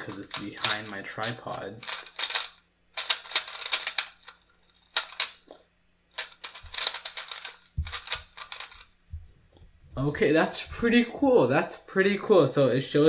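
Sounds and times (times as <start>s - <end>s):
puzzle cube plastic clacking: 0.0s - 8.9s.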